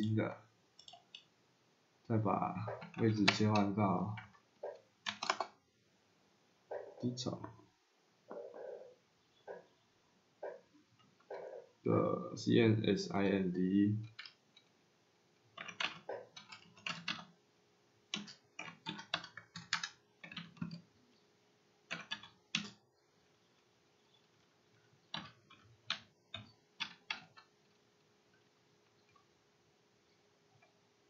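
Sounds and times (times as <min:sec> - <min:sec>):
typing on keyboard: 0:00.8 - 0:01.2, 0:02.7 - 0:05.6, 0:14.0 - 0:14.4, 0:15.6 - 0:17.3, 0:18.1 - 0:20.9, 0:21.9 - 0:22.8, 0:25.1 - 0:27.5.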